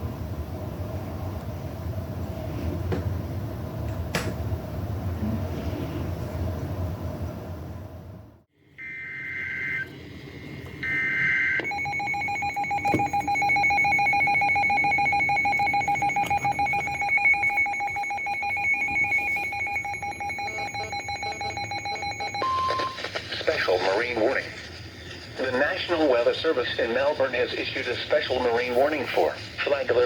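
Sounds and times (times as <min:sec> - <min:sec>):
two-tone attention signal: 0:08.8 - 0:09.9, 0:10.8 - 0:23.0
warbling data bursts: 0:11.0 - 0:24.7.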